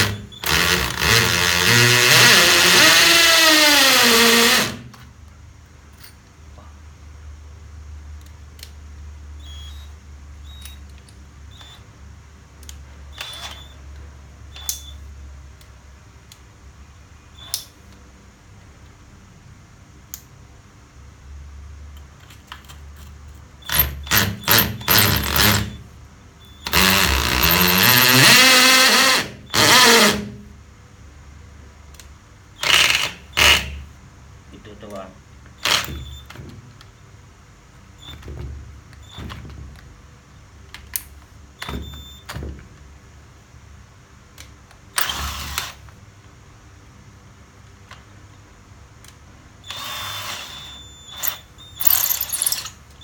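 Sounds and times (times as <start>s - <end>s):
hammer drill on concrete: 0.0s - 4.9s, 23.6s - 25.8s, 26.6s - 30.4s, 32.6s - 33.8s, 35.6s - 36.2s, 45.0s - 45.9s, 49.6s - 52.8s
low hum and faint clicks: 4.8s - 24.2s, 30.4s - 32.8s, 33.8s - 50.0s.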